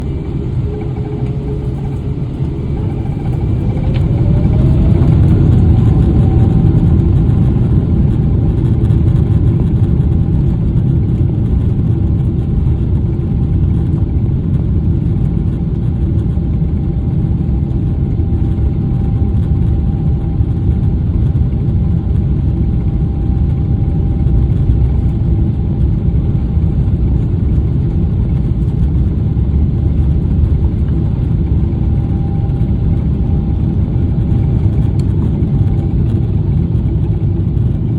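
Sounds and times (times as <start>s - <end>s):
jet engines spooling up: 0.0s - 9.0s
deep rumble: 0.0s - 37.9s.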